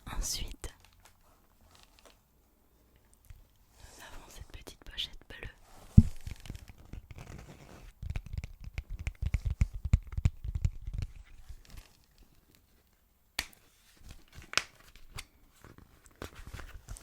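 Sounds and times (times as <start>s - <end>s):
soft thuds: 5.8s - 6.3s.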